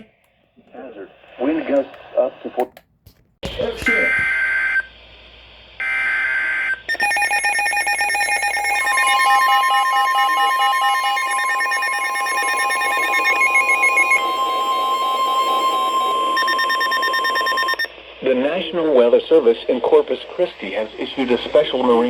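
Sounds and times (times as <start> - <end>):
electronic attention alarm: 5.8 - 17.9.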